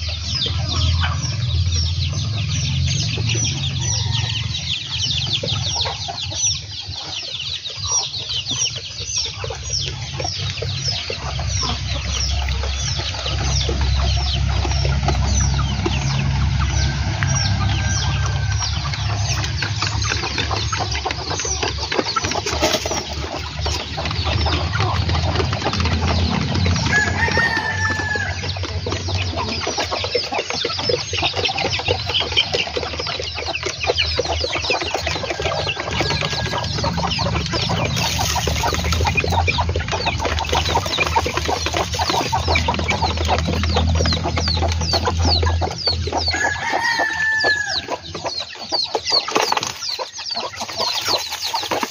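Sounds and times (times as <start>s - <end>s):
chickens clucking: 0.0s - 51.9s
low rumble: 0.3s - 5.9s, 10.0s - 21.8s, 35.1s - 46.3s.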